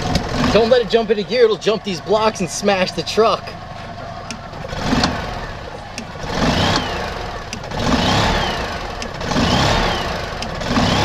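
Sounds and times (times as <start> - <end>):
small engine running unevenly: 0.0 - 11.0.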